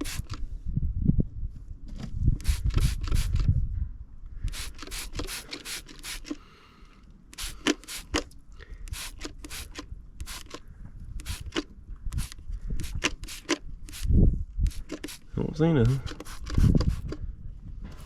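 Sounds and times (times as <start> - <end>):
spray bottle hissing: 0.0 - 0.4, 2.4 - 3.4, 4.5 - 6.4, 7.3 - 8.2, 8.9 - 10.6, 11.2 - 14.1, 14.7 - 15.3, 16.1 - 17.2.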